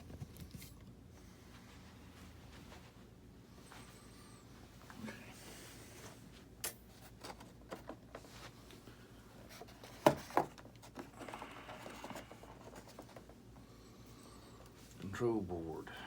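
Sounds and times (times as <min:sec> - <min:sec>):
parts and wiring being handled: 0:05.8 - 0:13.6.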